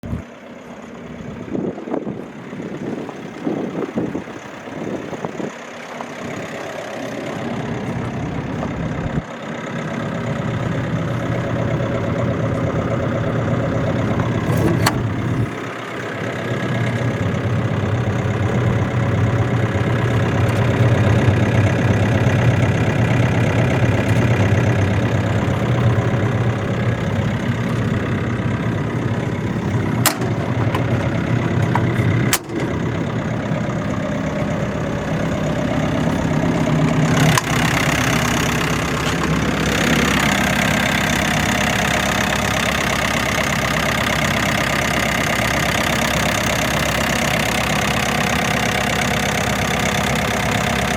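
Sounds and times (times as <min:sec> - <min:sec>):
diesel generator running: 0:00.0 - 0:50.9
uneven engine knocks: 0:29.6 - 0:33.9
sharp click: 0:32.4 - 0:32.7.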